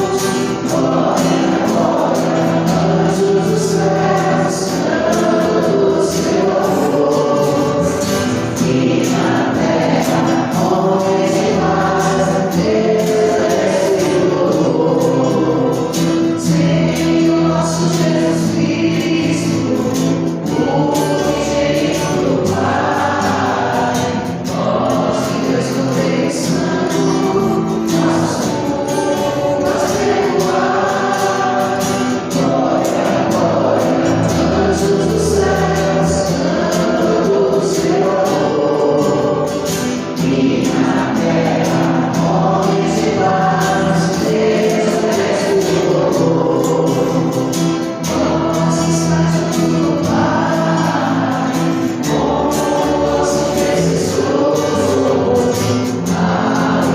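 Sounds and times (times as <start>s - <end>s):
choir singing gospel: 0.0s - 56.9s.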